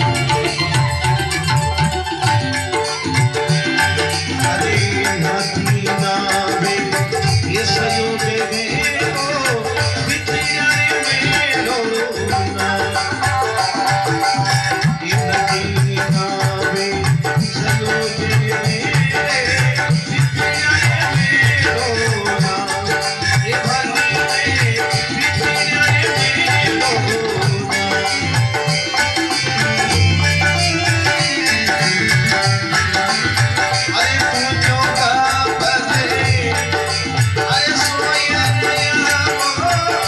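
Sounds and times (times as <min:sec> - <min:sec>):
steady drum rhythm: 0:00.0 - 0:40.0
held melodic lines: 0:17.8 - 0:40.0.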